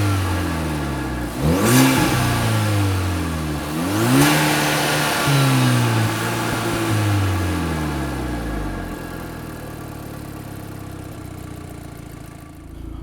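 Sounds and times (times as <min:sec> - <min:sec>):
car engine revving: 0:00.0 - 0:10.0.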